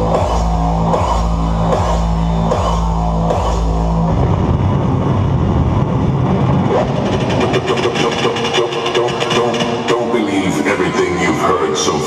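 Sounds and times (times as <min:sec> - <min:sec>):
distorted kick drum: 0:00.0 - 0:06.5
hardstyle dance music: 0:00.0 - 0:12.0.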